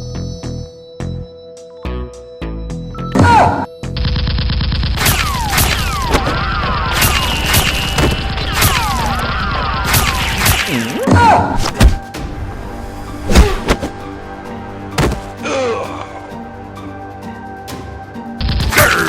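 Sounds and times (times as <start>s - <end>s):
heavy thuds: 11.6s - 12.1s, 14.9s - 15.4s.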